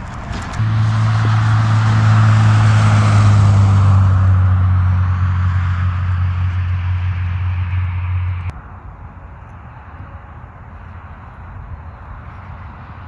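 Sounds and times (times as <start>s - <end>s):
rush of noise: 0.0s - 13.0s
vehicle engine drone: 0.0s - 13.0s.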